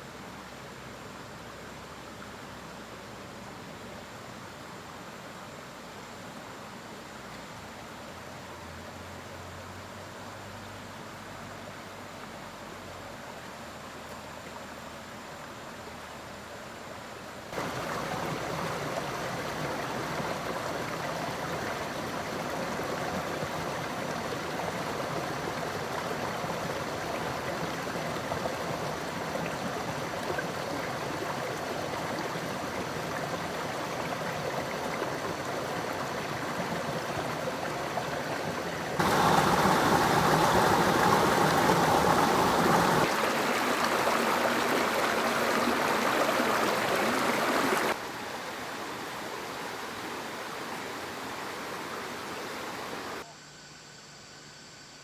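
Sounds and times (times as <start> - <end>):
stream rushing and gurgling: 10.6 - 53.2.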